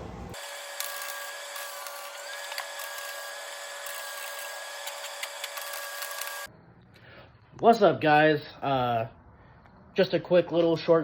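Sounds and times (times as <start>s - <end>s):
welder arc crackling and sizzling: 0.4s - 6.5s.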